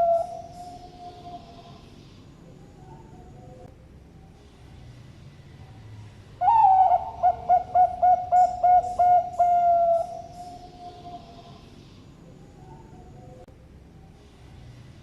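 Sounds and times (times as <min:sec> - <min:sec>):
dove cooing: 0:00.0 - 0:01.8, 0:06.4 - 0:11.6.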